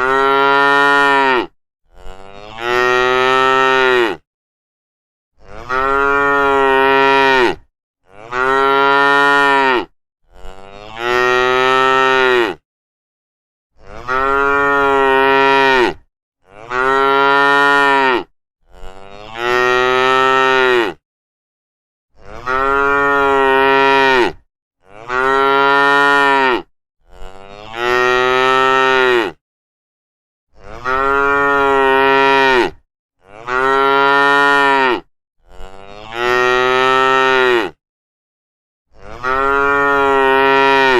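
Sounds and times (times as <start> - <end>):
cows mooing: 0.0 - 4.2, 5.4 - 12.6, 13.8 - 21.0, 22.3 - 29.4, 30.6 - 37.8, 39.0 - 40.9.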